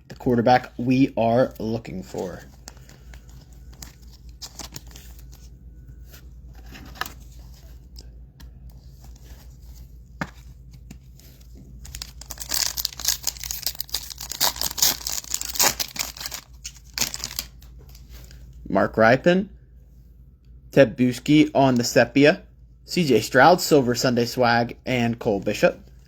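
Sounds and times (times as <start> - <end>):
wrapper tearing and crinkling: 2.2 - 5.3, 11.8 - 17.6.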